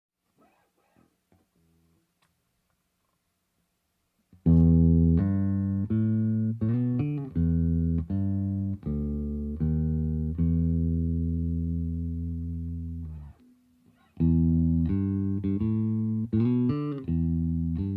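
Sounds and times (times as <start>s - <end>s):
electric bass plucked notes: 4.4s - 17.9s.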